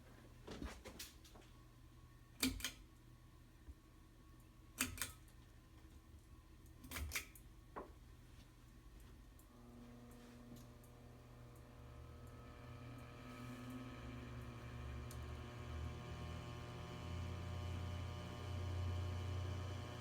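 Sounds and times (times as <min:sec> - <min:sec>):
steady low hum: 0:08.7 - 0:20.0.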